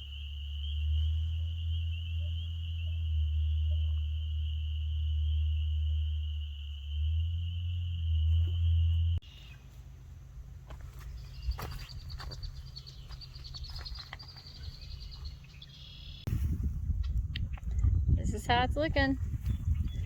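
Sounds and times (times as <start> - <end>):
high-pitched whine: 0.0 - 9.3
low hum: 0.0 - 20.0
outdoor ambience: 0.0 - 20.0.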